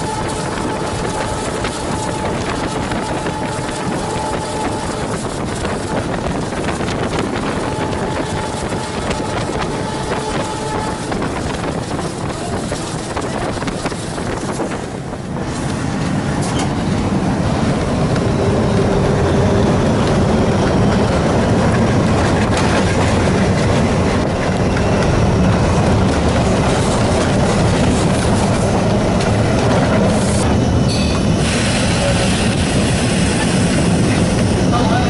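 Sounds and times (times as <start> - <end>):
diesel locomotive engine chugging: 0.0 - 35.0
train wheels on rails: 0.0 - 35.0.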